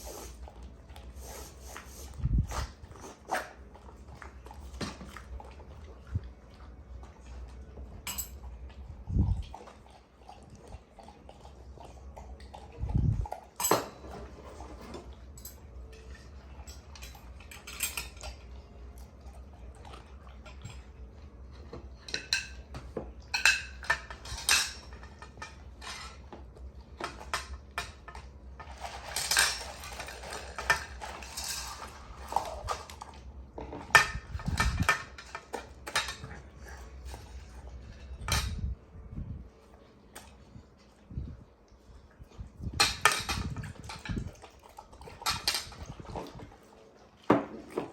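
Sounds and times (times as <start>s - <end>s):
dog eating from a dish: 0.0s - 47.9s
dish clinking and clattering: 7.8s - 8.5s, 13.3s - 18.5s, 21.6s - 38.7s, 42.7s - 46.6s, 47.2s - 47.9s.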